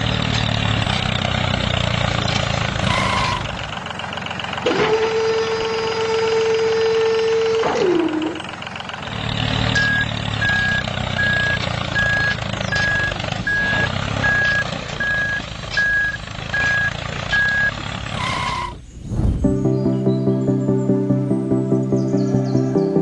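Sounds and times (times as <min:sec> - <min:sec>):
low engine rumble: 0:00.0 - 0:23.0
vehicle reversing alarm beeping: 0:01.4 - 0:18.8
short whooshing sweep: 0:18.8 - 0:19.5.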